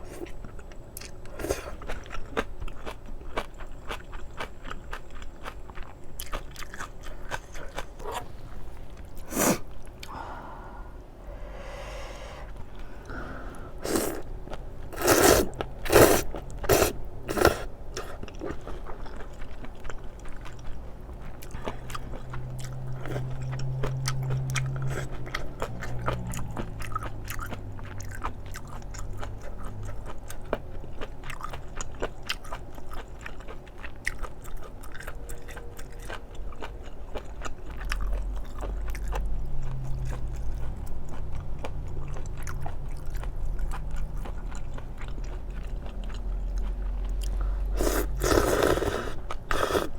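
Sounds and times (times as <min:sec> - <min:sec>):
chewing and biting food: 0:00.0 - 0:10.1, 0:13.8 - 0:49.9
loud sharp bites or slurps: 0:13.8 - 0:14.2, 0:14.9 - 0:17.7, 0:47.8 - 0:49.9.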